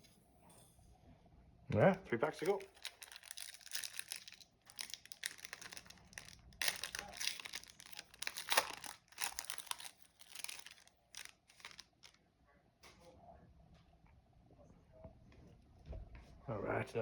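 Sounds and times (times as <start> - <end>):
card pack wrapper tearing and crinkling: 2.2 - 12.2.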